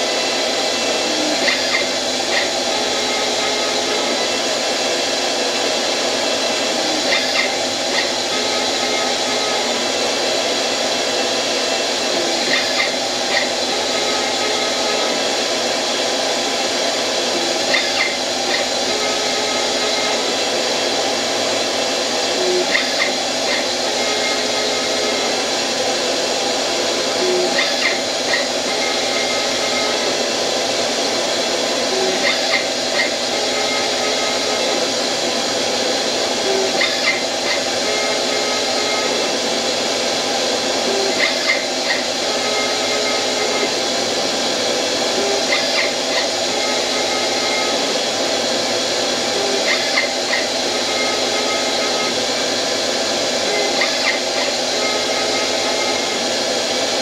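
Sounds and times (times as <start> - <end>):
axis motors whining: 0.0 - 57.0
lathe spindle and motor hum: 0.0 - 57.0.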